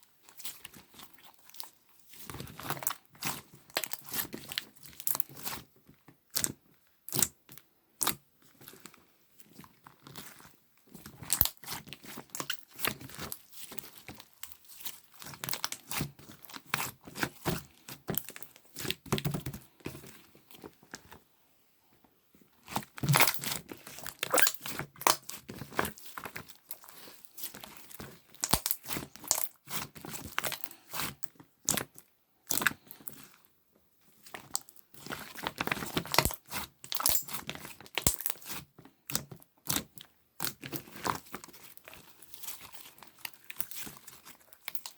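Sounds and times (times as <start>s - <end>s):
slime crackling and crunching: 11.3s - 19.0s, 22.6s - 33.3s, 34.2s - 44.9s.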